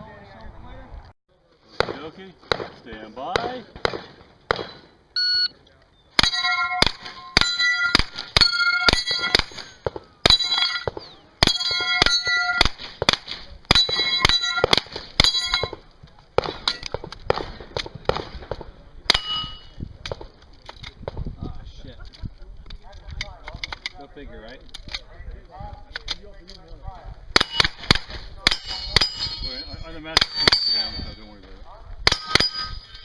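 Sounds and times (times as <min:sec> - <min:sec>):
rifle firing rapid shots: 0:01.8 - 0:04.8, 0:06.2 - 0:15.4
steel targets ringing: 0:06.2 - 0:12.7, 0:13.7 - 0:15.8, 0:19.1 - 0:19.7, 0:28.5 - 0:31.3, 0:32.1 - 0:33.0.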